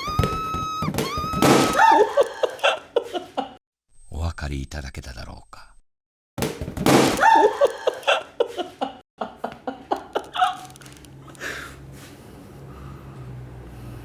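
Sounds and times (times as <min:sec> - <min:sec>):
person laughing: 0:01.4 - 0:03.6, 0:07.2 - 0:10.7.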